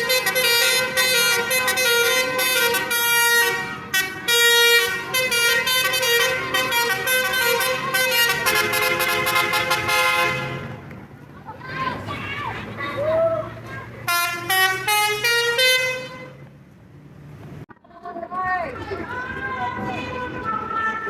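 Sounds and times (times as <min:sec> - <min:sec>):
musical truck horn tune: 0:00.0 - 0:10.9, 0:14.1 - 0:16.5.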